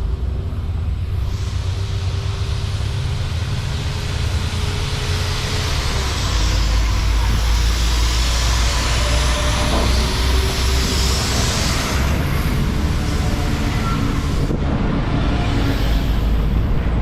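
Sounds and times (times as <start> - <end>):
diesel train engine rumble: 0.0 - 17.0
wheel and rail noise: 0.0 - 17.0.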